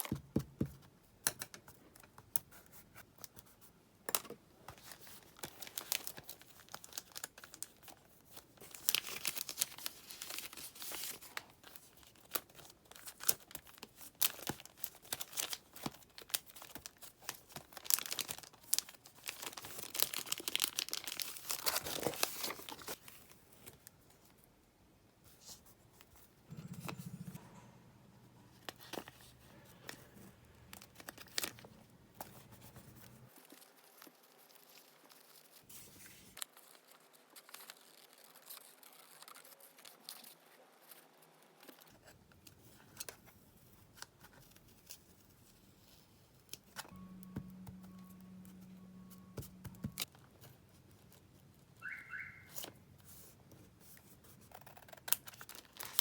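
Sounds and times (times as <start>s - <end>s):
paper crinkling and rustling: 4.2s - 24.4s, 28.5s - 47.0s, 52.5s - 56.0s.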